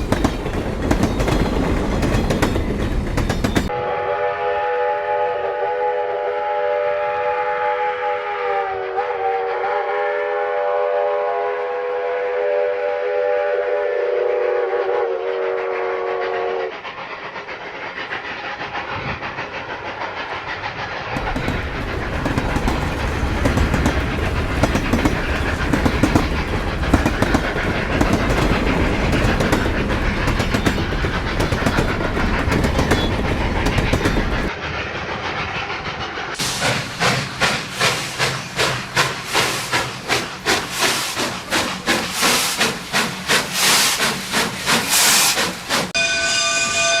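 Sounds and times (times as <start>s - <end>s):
heavy train rumbling past: 0.0s - 47.0s
steam whistle chord: 3.7s - 16.7s, 46.0s - 47.0s
steam exhaust chuffs: 15.6s - 46.0s.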